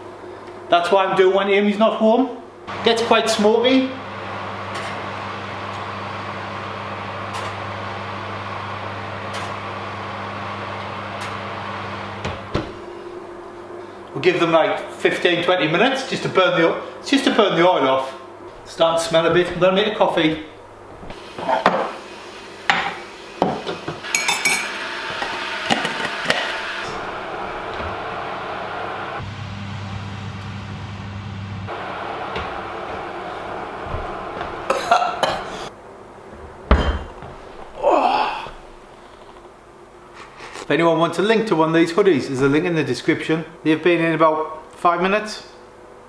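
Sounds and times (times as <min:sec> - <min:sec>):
oven humming: 0:00.0 - 0:46.0
crockery and cutlery clinking: 0:24.0 - 0:26.5.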